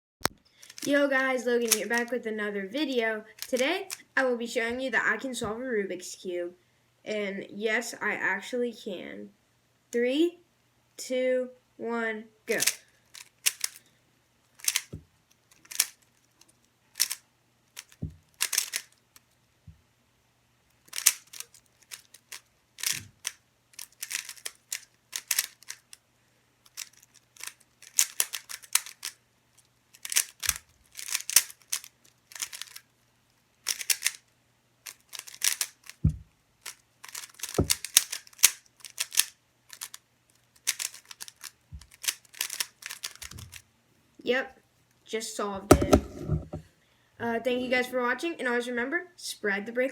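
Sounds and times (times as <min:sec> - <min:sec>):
plastic cube clicking as turned: 0:00.6 - 0:00.9, 0:01.7 - 0:02.1, 0:03.4 - 0:03.6, 0:12.6 - 0:13.8, 0:14.6 - 0:17.2, 0:17.8 - 0:19.3, 0:20.8 - 0:26.0, 0:26.6 - 0:29.2, 0:29.9 - 0:32.8, 0:33.6 - 0:34.2, 0:34.8 - 0:43.6
dull knocks handling cube: 0:14.6 - 0:15.9, 0:17.8 - 0:18.9, 0:35.1 - 0:36.3, 0:37.1 - 0:39.9, 0:40.6 - 0:43.6, 0:45.7 - 0:46.6.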